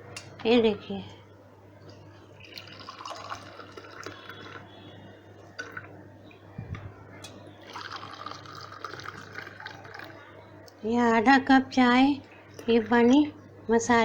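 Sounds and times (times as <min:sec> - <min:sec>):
tea pouring into cups: 0:02.4 - 0:06.0, 0:07.6 - 0:10.4.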